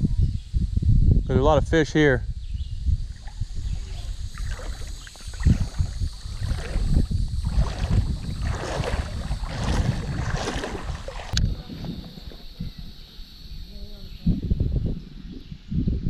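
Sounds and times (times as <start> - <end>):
wind buffeting microphone: 0.0 - 16.0
water sloshing and splashing: 3.1 - 12.6.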